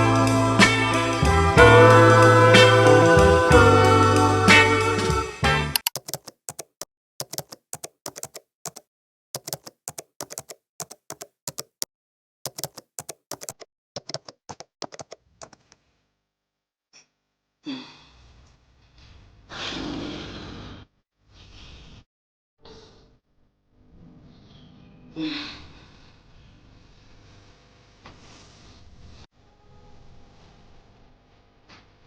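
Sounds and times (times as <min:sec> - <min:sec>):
sharp clicks and taps: 0:05.7 - 0:11.9, 0:12.5 - 0:15.6.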